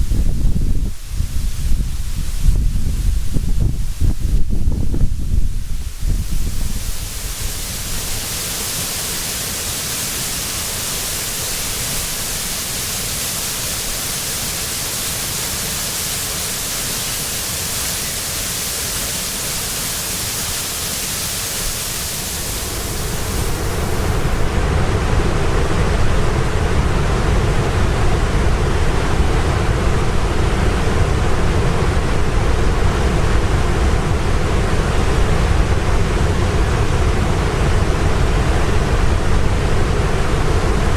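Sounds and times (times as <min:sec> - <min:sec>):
waterfall crashing: 0:06.4 - 0:24.7.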